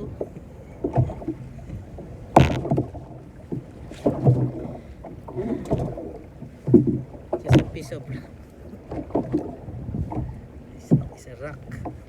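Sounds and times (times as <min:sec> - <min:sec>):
dull thumps: 0:00.0 - 0:06.1, 0:06.7 - 0:07.9
knocks and handling on boat: 0:00.0 - 0:12.0.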